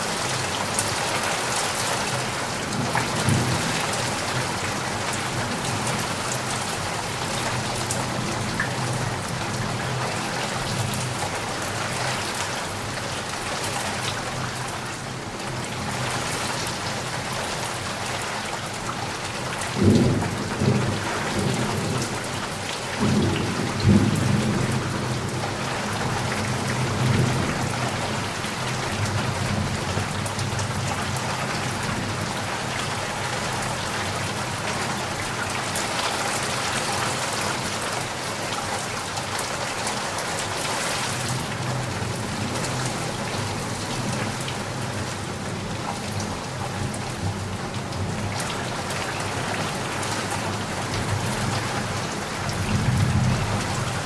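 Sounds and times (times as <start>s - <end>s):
steady rain pattering: 0.0s - 54.0s
low rumbles of thunder: 19.7s - 28.1s.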